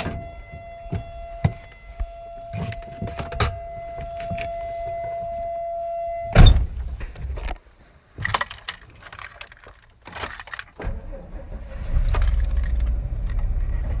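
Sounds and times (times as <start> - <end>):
electronic warning tone: 0.0 - 6.4
loud thump: 6.4 - 7.0
clicks and rattles: 8.2 - 10.9, 12.1 - 13.5.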